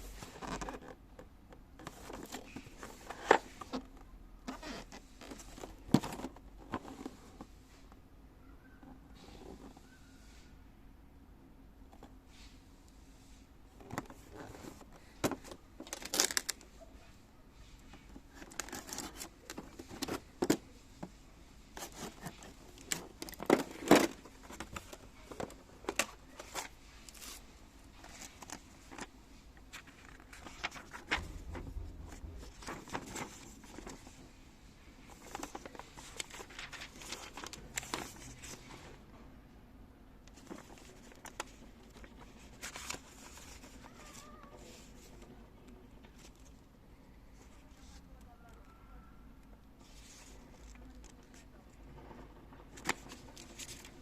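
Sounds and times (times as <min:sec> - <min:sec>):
packaging rustling and crinkling: 0:13.8 - 0:16.7, 0:17.9 - 0:20.6, 0:21.8 - 0:34.4, 0:35.0 - 0:38.8.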